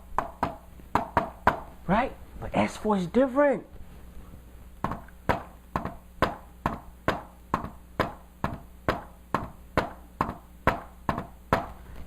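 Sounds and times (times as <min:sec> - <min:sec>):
knocking on hard surface: 0:00.2 - 0:01.7, 0:04.8 - 0:11.8.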